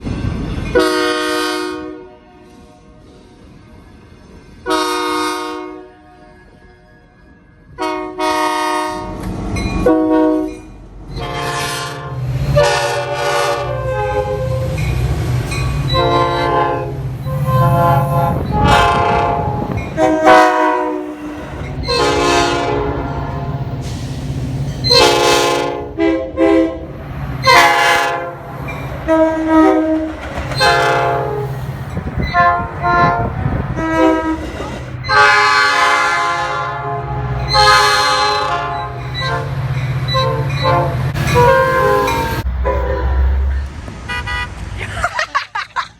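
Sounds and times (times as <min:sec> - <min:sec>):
train rumble: 0:00.0 - 0:45.9
locomotive air horn blasts: 0:00.7 - 0:02.5, 0:04.6 - 0:06.4, 0:07.7 - 0:09.2, 0:09.8 - 0:10.6, 0:11.2 - 0:14.8, 0:15.9 - 0:24.0, 0:24.8 - 0:31.6, 0:32.2 - 0:44.6.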